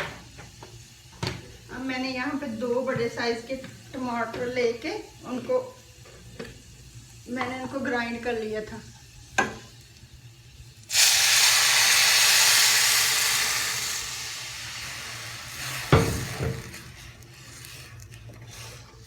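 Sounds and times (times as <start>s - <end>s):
sizzling in hot oil: 0.1s - 17.7s.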